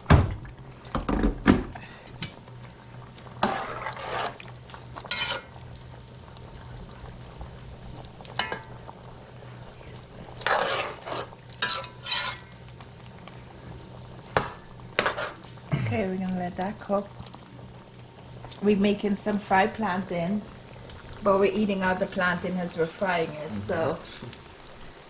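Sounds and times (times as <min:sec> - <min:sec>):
steady low hum: 0:00.0 - 0:25.0
spoon stirring and scraping pot: 0:03.4 - 0:05.5, 0:10.4 - 0:12.5, 0:14.4 - 0:15.5.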